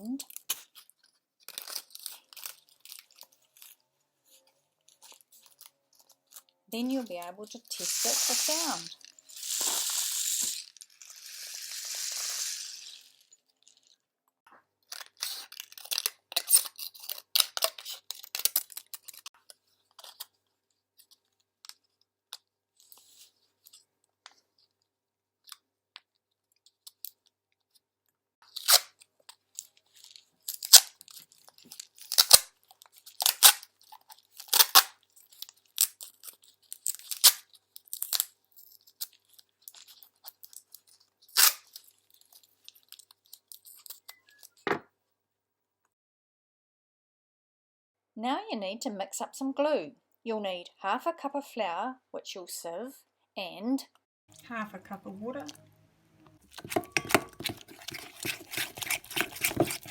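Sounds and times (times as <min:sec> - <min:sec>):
rain stick rattling: 0:07.7 - 0:13.2, 0:56.5 - 0:59.9.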